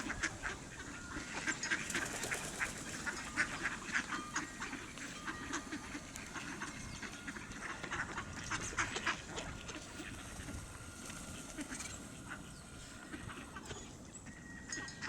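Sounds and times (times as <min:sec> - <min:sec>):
ducks quacking: 0:00.0 - 0:15.0.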